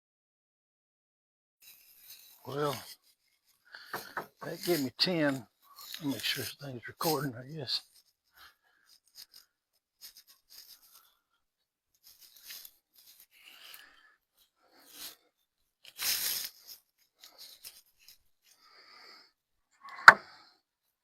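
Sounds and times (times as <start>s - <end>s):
sharp knock on wood: 4.0s - 4.5s.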